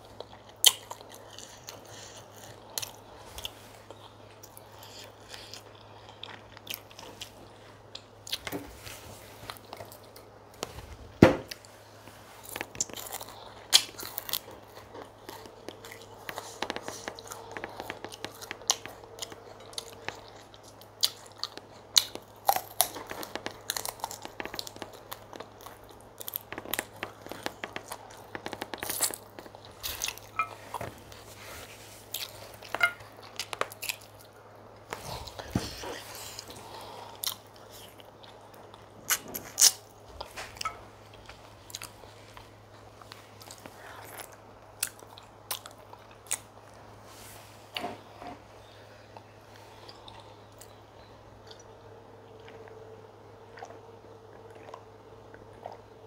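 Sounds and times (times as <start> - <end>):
faint low hum: 0.0 - 56.0
wet chewing and crunchy bites: 12.4 - 31.3, 32.0 - 46.8.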